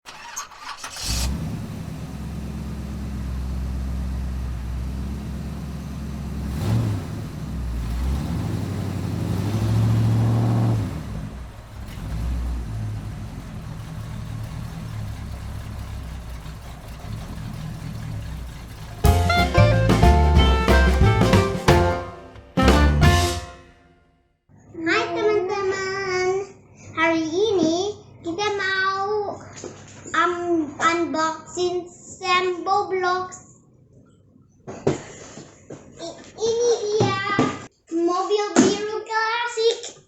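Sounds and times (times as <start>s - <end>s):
car engine revving: 0.1s - 23.3s.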